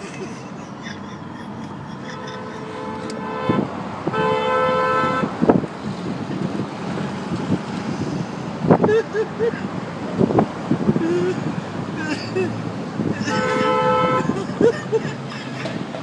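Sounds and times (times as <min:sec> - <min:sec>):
car horn honking: 0:02.1 - 0:05.6, 0:13.2 - 0:14.4.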